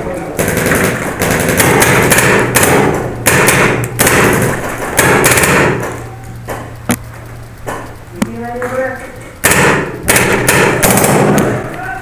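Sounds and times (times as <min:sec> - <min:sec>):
paintball marker rapid bursts: 0:00.4 - 0:06.0, 0:09.4 - 0:11.9.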